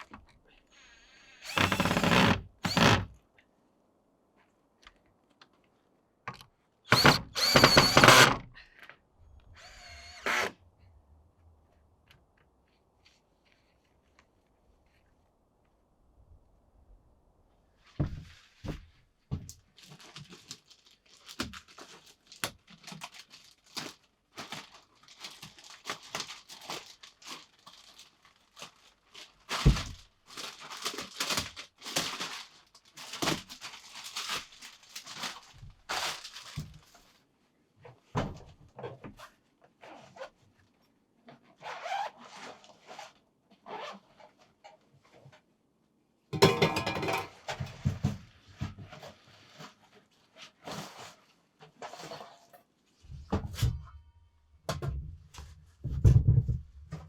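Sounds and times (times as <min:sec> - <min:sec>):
rustling and scraping of materials: 0:11.6 - 0:15.4, 0:17.6 - 0:45.6, 0:46.4 - 0:53.9
knocks and thuds: 0:55.8 - 0:57.0.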